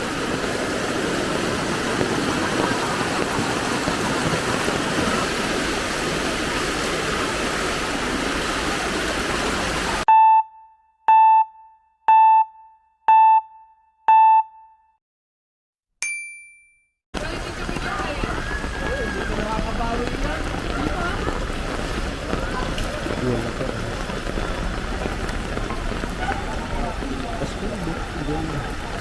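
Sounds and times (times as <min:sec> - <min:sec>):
floodwater rushing: 0:00.0 - 0:10.1, 0:17.2 - 0:29.0
short electronic beeps: 0:10.1 - 0:14.8.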